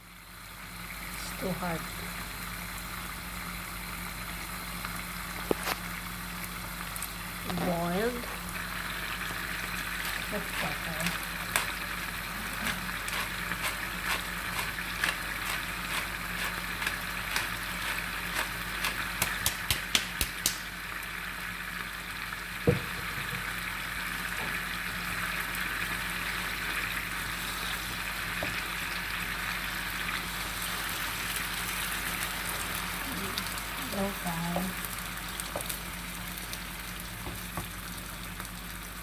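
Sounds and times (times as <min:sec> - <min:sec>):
chicken frying in hot oil: 0:00.0 - 0:39.0
knock: 0:22.7 - 0:23.4.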